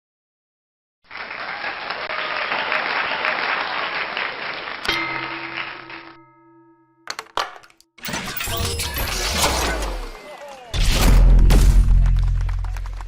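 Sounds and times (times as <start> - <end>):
crowd applause: 1.1 - 6.2, 12.0 - 13.0
sustained ringing musical tone: 4.9 - 7.1.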